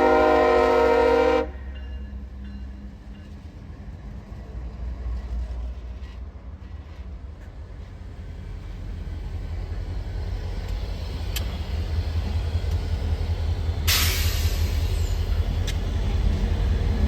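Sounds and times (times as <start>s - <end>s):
freight train rumbling past: 0.0s - 17.0s
faint clicks: 10.6s - 11.6s, 12.6s - 12.9s, 15.6s - 15.9s
sharp hiss: 12.7s - 16.1s.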